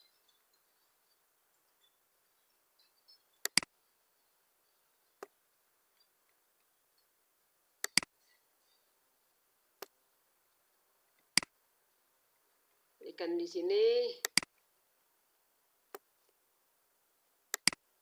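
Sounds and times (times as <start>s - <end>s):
computer mouse clicks: 3.4s - 3.7s, 7.8s - 8.1s, 14.2s - 14.6s, 17.5s - 17.8s.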